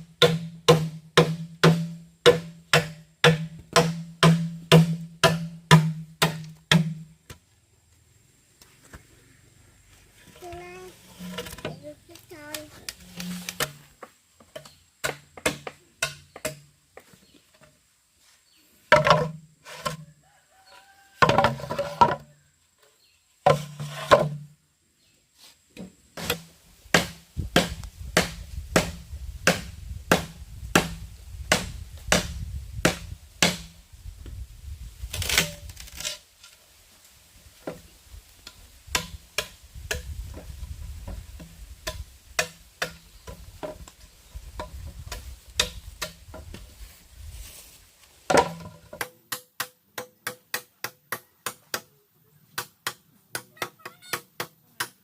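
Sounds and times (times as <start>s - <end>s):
chopping blows: 0.1s - 7.1s, 26.2s - 33.8s.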